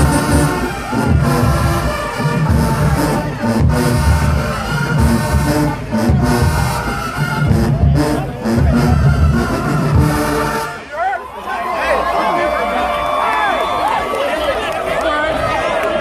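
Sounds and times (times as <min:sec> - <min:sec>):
low drum and tuba hits: 0:00.0 - 0:10.6
marching band brass: 0:00.0 - 0:11.2.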